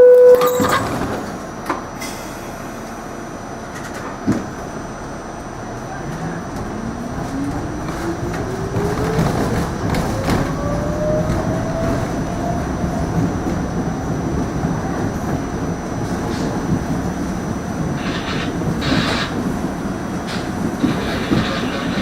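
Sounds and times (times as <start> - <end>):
wheels rumbling on track: 0.4 - 22.0.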